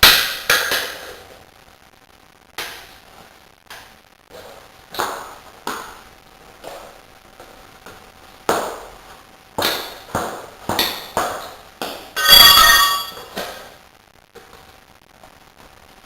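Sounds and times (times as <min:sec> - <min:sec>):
metal tools knocking: 0:12.2 - 0:13.2
loud metallic clang: 0:12.2 - 0:13.3.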